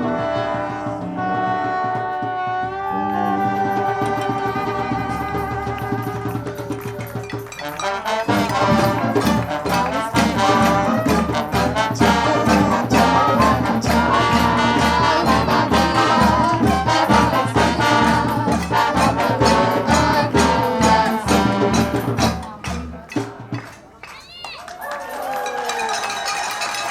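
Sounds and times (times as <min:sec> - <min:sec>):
brass music over a beat: 0:00.0 - 0:24.2.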